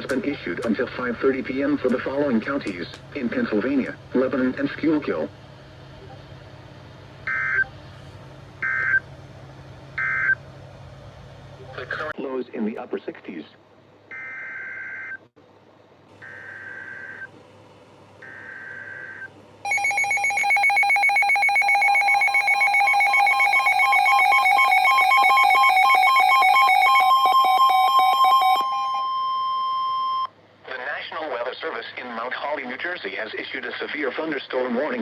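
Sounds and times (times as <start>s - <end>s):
steady attention tone: 18.2s - 30.3s.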